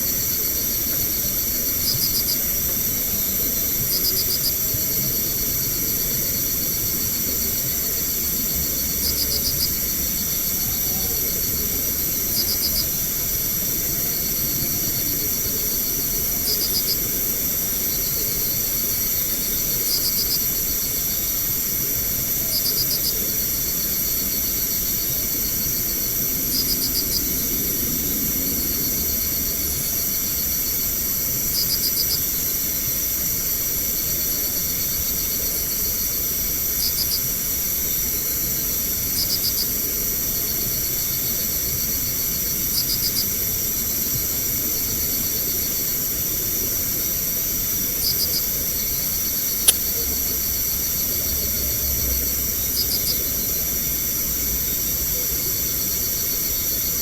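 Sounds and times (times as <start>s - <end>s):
night insects chorus: 0.0s - 57.0s
sharp click: 49.6s - 50.0s.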